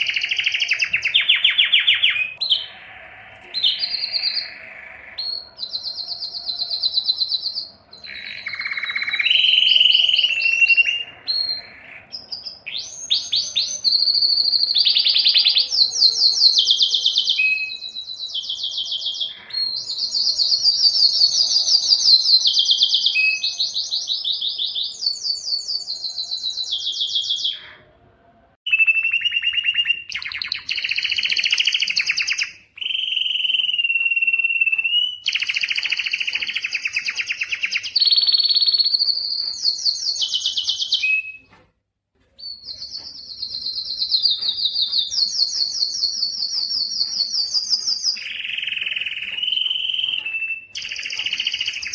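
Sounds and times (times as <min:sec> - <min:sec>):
canary singing rolled trills: 0:00.0 - 0:41.5, 0:42.3 - 0:51.9.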